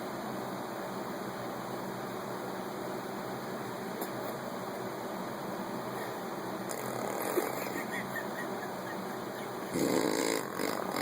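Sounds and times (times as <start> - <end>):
steady fan-like hiss: 0.0 - 11.0.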